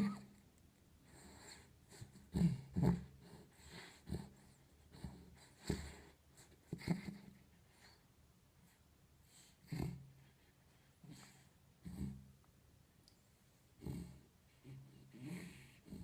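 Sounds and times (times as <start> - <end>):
dog snoring: 1.2 - 6.1, 9.3 - 10.3, 13.8 - 16.0.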